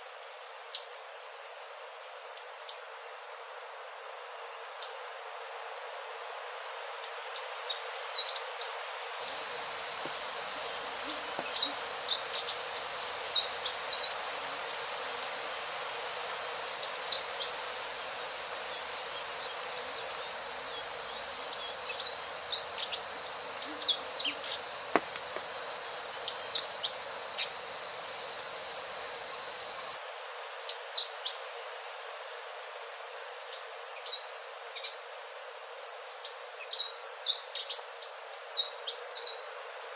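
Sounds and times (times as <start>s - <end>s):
steady hiss: 0.0s - 30.7s
bird singing high gliding notes: 9.2s - 30.0s.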